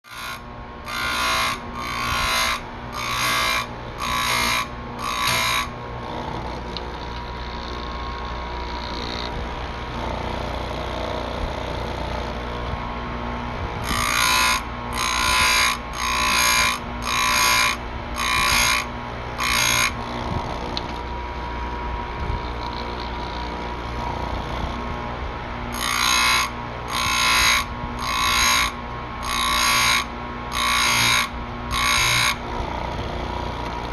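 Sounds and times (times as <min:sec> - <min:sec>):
grinder motor hum: 0:00.0 - 0:33.9.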